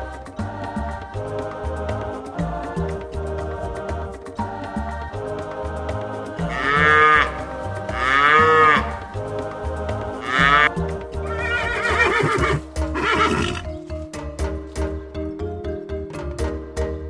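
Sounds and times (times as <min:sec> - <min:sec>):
background music: 0:00.0 - 0:17.0
farm animal calls: 0:06.5 - 0:09.1, 0:10.1 - 0:13.7.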